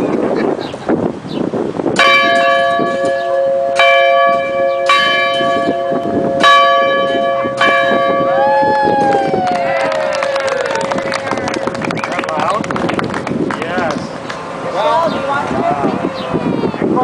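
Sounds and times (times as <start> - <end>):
school bell clanging: 2.0 - 8.4.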